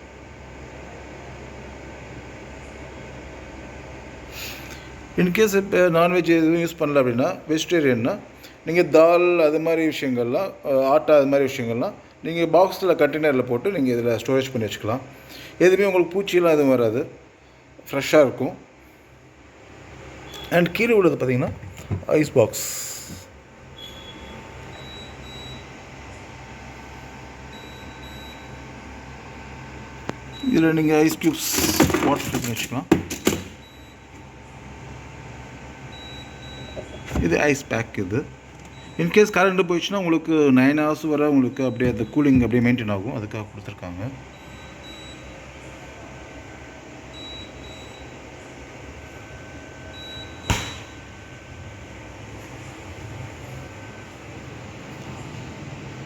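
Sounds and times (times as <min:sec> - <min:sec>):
fridge hum: 0:00.0 - 0:56.0
refrigerator alarm beeping: 0:20.2 - 0:26.3, 0:26.9 - 0:34.4, 0:35.0 - 0:56.0
freezer door thump: 0:31.4 - 0:33.6, 0:50.4 - 0:51.0.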